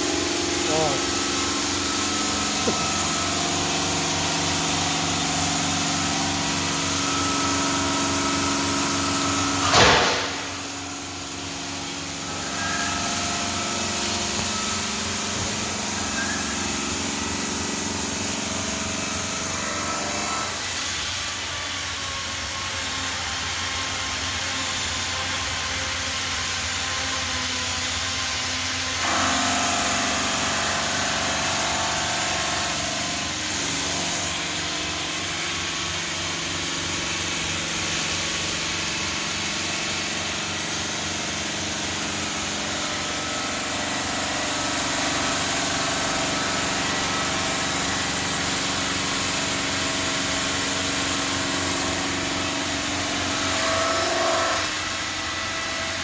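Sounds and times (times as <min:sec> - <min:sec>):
stone saw cutting: 0:00.0 - 0:56.0
brief loud burst: 0:09.6 - 0:10.7.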